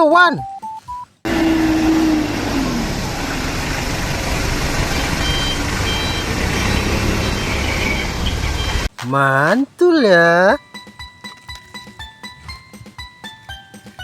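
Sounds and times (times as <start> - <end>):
truck engine running: 1.3 - 8.9.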